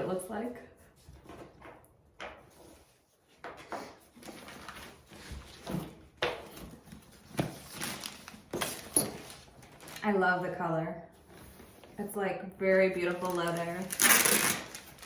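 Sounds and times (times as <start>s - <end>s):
packaging rustling: 6.7s - 10.2s, 13.0s - 15.0s.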